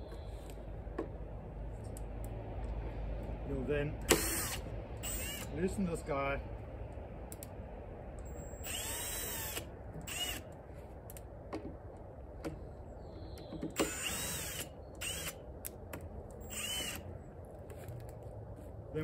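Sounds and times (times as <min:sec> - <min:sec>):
electric drill backing out screws: 0:04.1 - 0:05.5, 0:13.6 - 0:15.4, 0:16.4 - 0:17.0.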